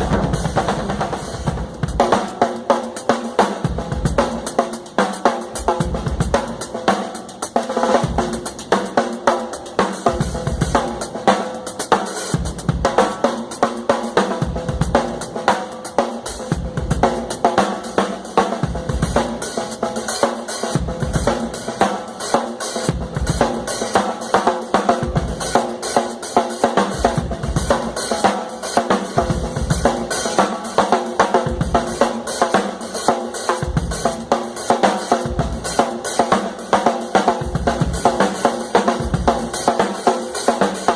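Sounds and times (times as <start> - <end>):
hi-hat and cymbals: 0.0 - 40.9.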